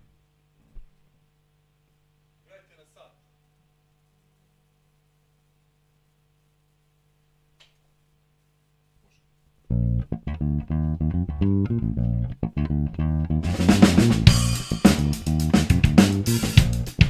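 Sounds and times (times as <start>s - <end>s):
faint click: 7.6s - 7.9s
electric bass funk groove: 9.7s - 17.0s
guitar: 9.7s - 17.0s
drums with cymbals: 13.4s - 17.0s.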